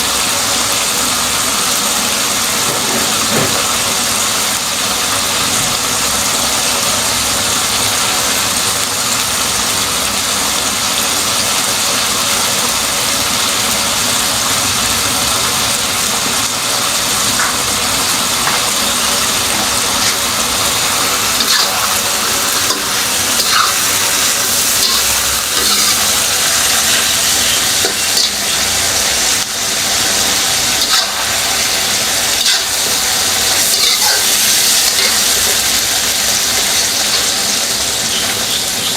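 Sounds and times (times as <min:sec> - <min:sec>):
chicken sizzling in a pan: 0:00.0 - 0:38.9
utensil scraping and clinking: 0:19.5 - 0:28.8, 0:30.8 - 0:35.6.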